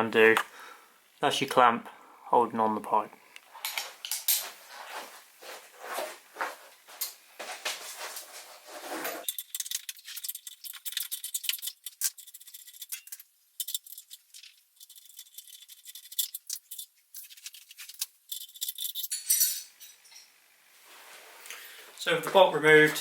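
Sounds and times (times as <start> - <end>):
metallic tool clinks: 18.9 - 20.4.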